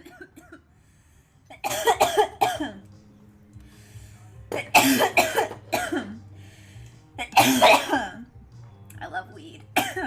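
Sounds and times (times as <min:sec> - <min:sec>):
woman coughing: 0:00.0 - 0:00.6, 0:01.5 - 0:02.9, 0:04.5 - 0:06.2, 0:07.2 - 0:08.3, 0:09.8 - 0:10.0.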